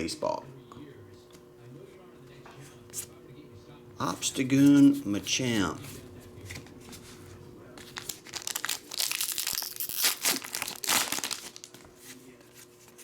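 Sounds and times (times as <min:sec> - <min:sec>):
plastic wrapper tearing and crinkling: 0:07.9 - 0:11.8.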